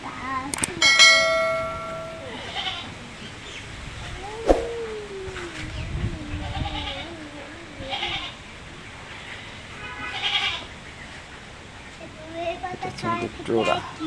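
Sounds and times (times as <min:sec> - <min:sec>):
sharp click: 0:00.5 - 0:00.8
livestock bleating: 0:02.2 - 0:02.9, 0:10.1 - 0:10.6.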